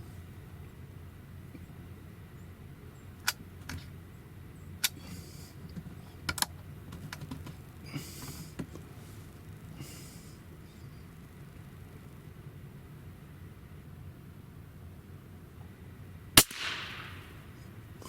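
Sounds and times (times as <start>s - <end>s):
low background rumble: 0.0s - 18.0s.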